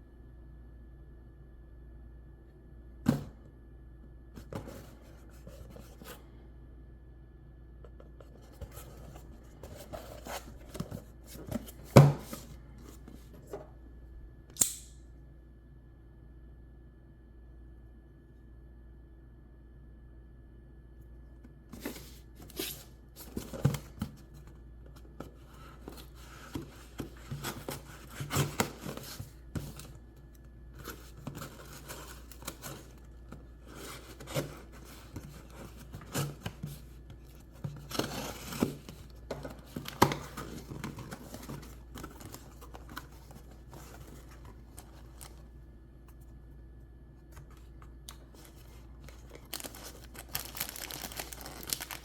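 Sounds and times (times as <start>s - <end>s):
packaging tearing and crinkling: 49.1s - 52.0s.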